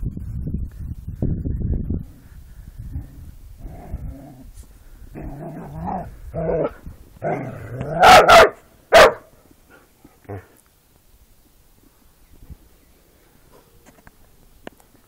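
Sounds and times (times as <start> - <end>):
dogs growling in play: 2.9 - 8.2
dogs barking: 7.3 - 9.3.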